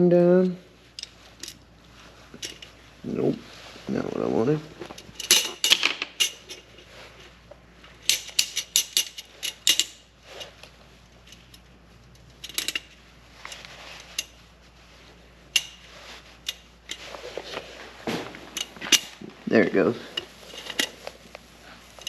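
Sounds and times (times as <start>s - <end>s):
small steel parts clicking: 5.0s - 6.9s, 8.0s - 14.4s, 15.5s - 15.8s.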